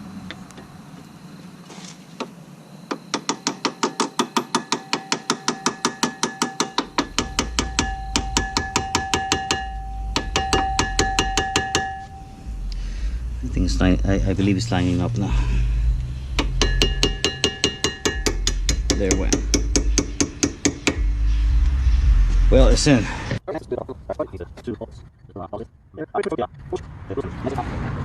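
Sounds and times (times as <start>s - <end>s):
metal ringing: 3.0s - 21.9s
hammer tapping metal pin: 3.2s - 12.1s, 16.4s - 21.0s.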